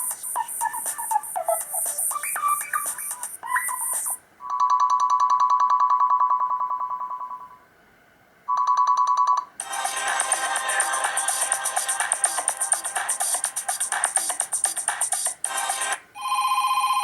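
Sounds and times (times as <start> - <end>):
electronic music ringtone: 0.0 - 7.6, 8.5 - 17.0
telephone ring pulsing: 4.4 - 7.6, 8.5 - 10.4, 15.6 - 17.0.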